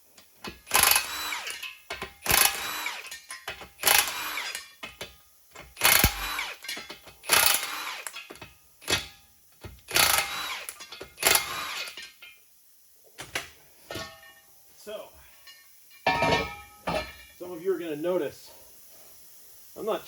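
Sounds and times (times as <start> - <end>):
impact wrench bursts: 0.4 - 9.1, 9.9 - 12.1.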